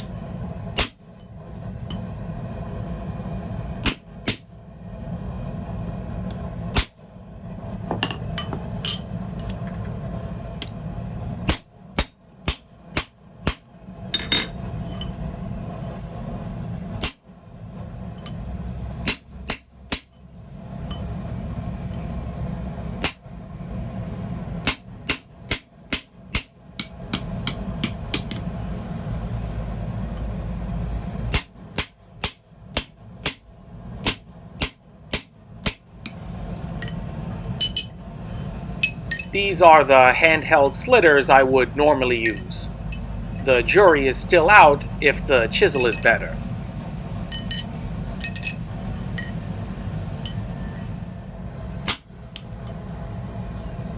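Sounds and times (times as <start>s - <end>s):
low forge rumble: 0.0s - 53.9s
hammer striking steel on anvil: 0.8s - 1.0s, 3.8s - 4.5s, 19.0s - 20.1s, 24.7s - 28.4s, 31.3s - 33.4s, 37.6s - 37.9s, 47.3s - 48.6s.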